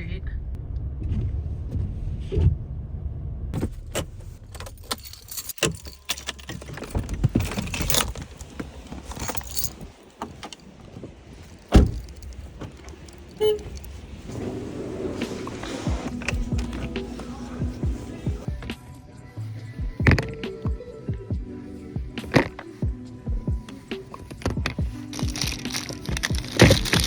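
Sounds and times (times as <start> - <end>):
engine and road rumble: 0.0 - 27.0
clinking and rattling in cabin: 3.6 - 18.5, 22.0 - 27.0
brief beep: 13.4 - 13.8.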